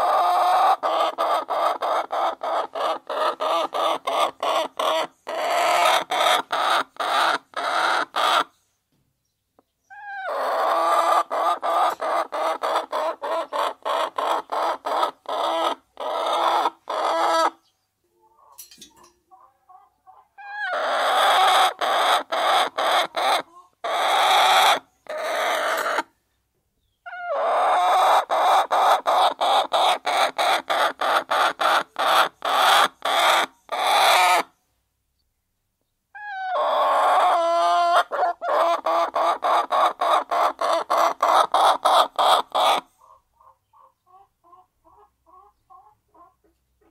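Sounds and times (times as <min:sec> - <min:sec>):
hens clucking: 0:00.0 - 0:08.5, 0:09.6 - 0:26.1, 0:27.0 - 0:34.5, 0:36.2 - 0:46.9.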